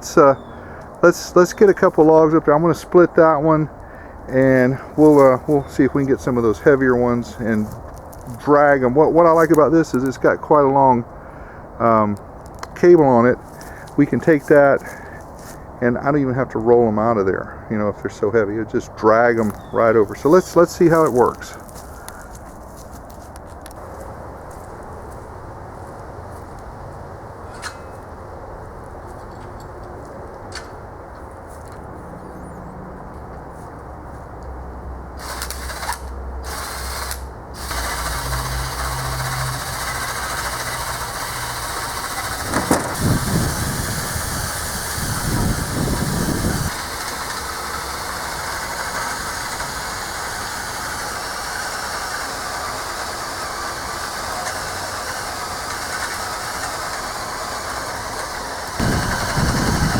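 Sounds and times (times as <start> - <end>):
machinery running: 35.2 - 59.9.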